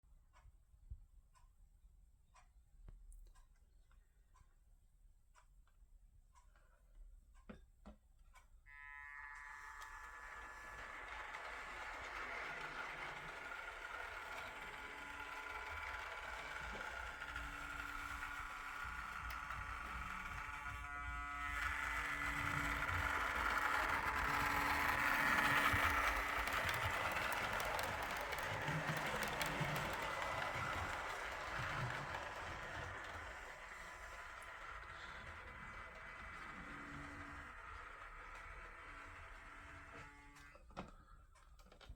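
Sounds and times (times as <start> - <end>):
train passing rumble: 10.2 - 39.4.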